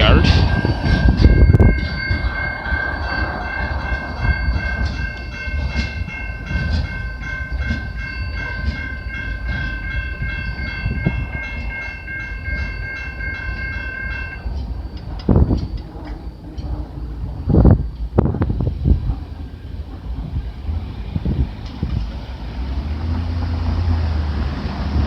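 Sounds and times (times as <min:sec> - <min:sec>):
high-pitched ringing tone: 0:00.0 - 0:18.0
freight train rumbling past: 0:00.0 - 0:25.0
wheels clattering on rail joints: 0:00.0 - 0:25.0.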